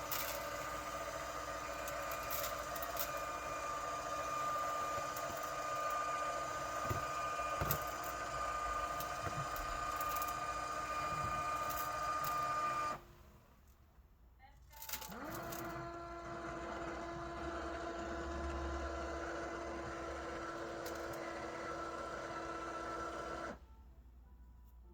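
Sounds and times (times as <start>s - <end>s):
motor whine: 0.0s - 13.0s.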